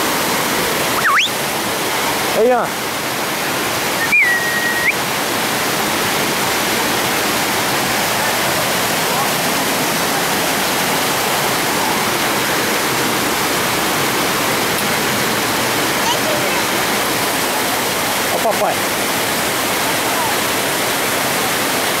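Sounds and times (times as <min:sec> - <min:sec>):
waterfall pouring: 0:00.0 - 0:22.0.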